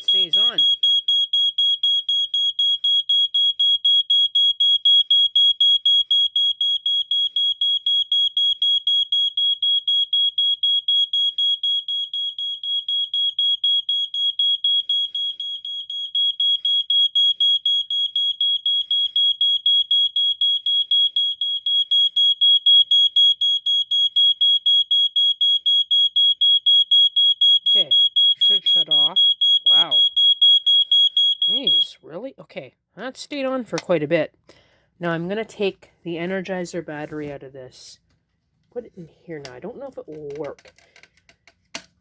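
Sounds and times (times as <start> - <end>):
smoke detector alarm pulsing: 0.0 - 32.0.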